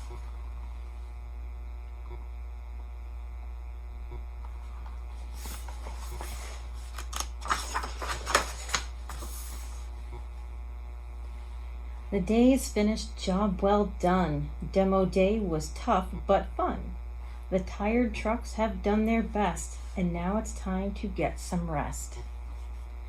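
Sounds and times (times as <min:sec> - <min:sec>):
low electrical hum: 0:00.0 - 0:23.0
book pages rustling: 0:04.5 - 0:09.9.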